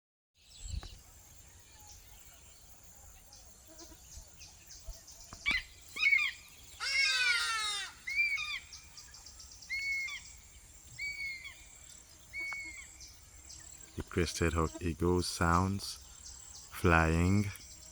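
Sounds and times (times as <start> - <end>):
wild birds calling: 1.6 - 17.9
insect chirring: 5.3 - 17.9
loud harsh bird call: 5.5 - 9.0, 9.6 - 10.4, 11.0 - 13.1.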